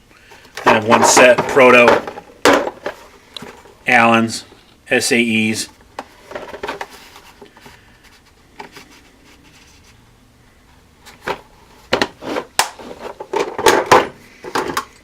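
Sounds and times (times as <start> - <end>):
tools scraping in a toolbox: 12.1 - 13.6.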